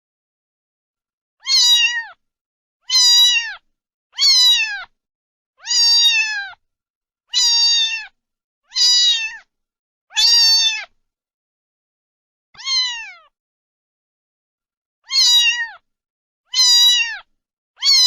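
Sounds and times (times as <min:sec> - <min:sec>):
cat meowing: 0:01.4 - 0:02.2, 0:02.8 - 0:04.9, 0:05.6 - 0:06.6, 0:07.3 - 0:09.5, 0:10.1 - 0:11.0, 0:12.6 - 0:13.4, 0:15.0 - 0:15.8, 0:16.5 - 0:18.0.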